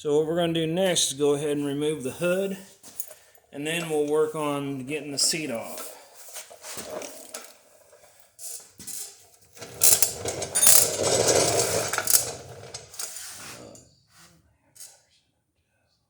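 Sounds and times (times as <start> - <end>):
metal objects clinking and clattering: 6.5 - 13.8.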